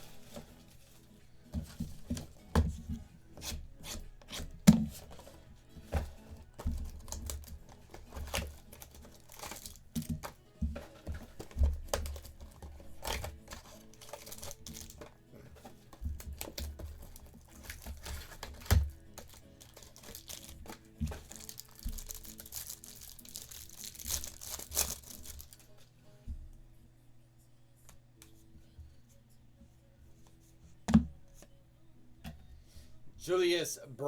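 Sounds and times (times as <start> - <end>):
quiet background music: 0.0 - 34.0
cards clicking and rustling: 3.4 - 25.8
wrappers crinkling: 5.0 - 25.9
card packs torn open: 6.0 - 10.4, 11.0 - 15.2, 16.2 - 25.7.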